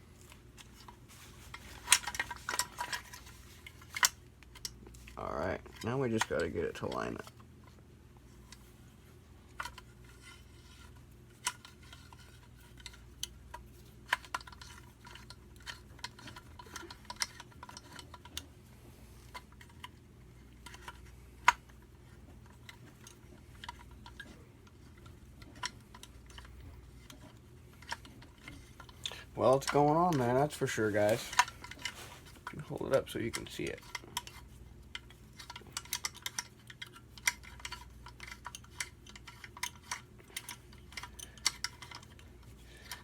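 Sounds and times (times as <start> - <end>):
small metal parts clicking: 9.6 - 18.5, 20.6 - 43.0.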